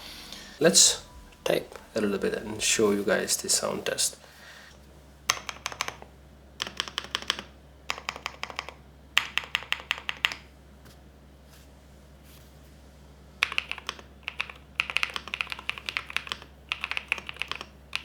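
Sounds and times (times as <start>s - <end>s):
typing on mechanical keyboard: 5.3s - 10.5s, 13.4s - 18.0s.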